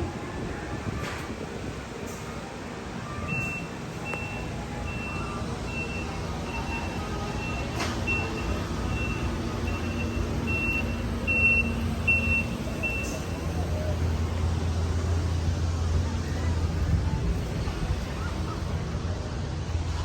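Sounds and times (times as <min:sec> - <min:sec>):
low rumble of ride system: 0:00.0 - 0:20.0
electronic warning beep: 0:03.3 - 0:13.4.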